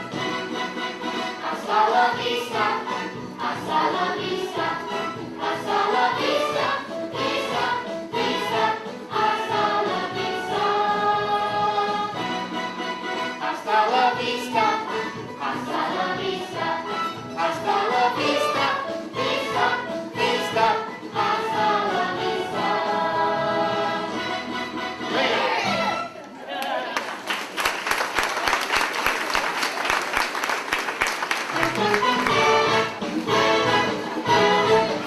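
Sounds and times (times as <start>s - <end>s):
children's choir singing: 0.0s - 26.0s.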